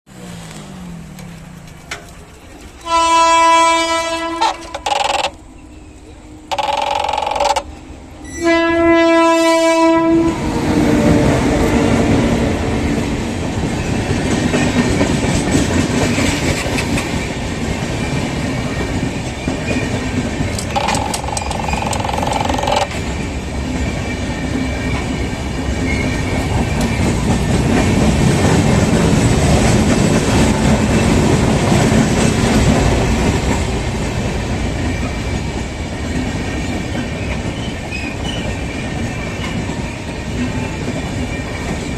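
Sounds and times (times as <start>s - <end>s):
train rumble and wheel clatter: 0.1s - 41.9s
train horn: 2.8s - 4.9s, 8.2s - 12.6s.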